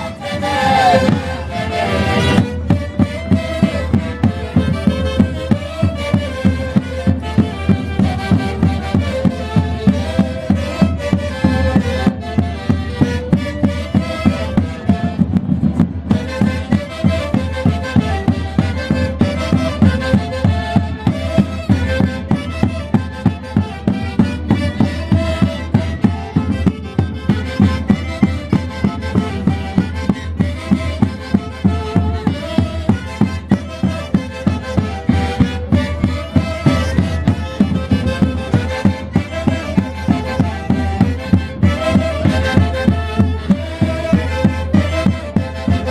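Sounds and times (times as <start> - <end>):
orchestra melody: 0.0 - 4.3
steady drumbeat: 0.0 - 45.9.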